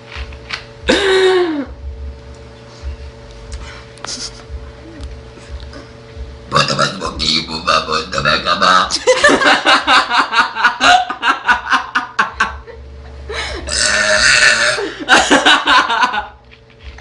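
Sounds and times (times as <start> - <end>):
girl burping loudly: 13.7 - 14.9.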